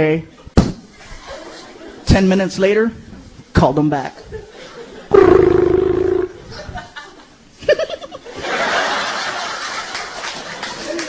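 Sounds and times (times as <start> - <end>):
noisy commotion: 5.1 - 6.6
burst of laughter: 6.4 - 11.0.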